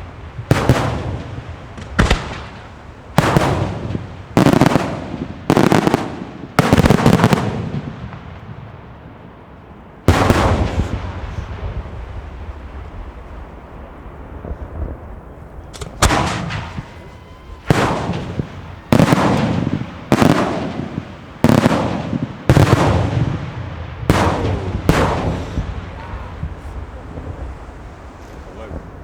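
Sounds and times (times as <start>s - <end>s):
fireworks shells bursting: 10.1s - 29.0s
low rumble: 22.2s - 29.0s.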